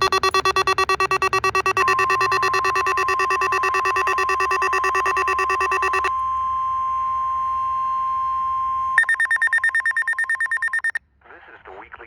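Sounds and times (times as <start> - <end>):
higher rapidly pulsing beep: 0.0 - 11.0
rapid pulsing beeps: 0.0 - 11.0
steady alarm tone: 0.0 - 11.0.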